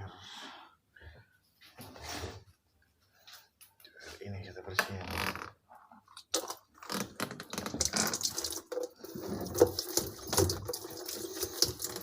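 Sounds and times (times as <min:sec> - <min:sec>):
water splashing and trickling: 0:06.2 - 0:12.0.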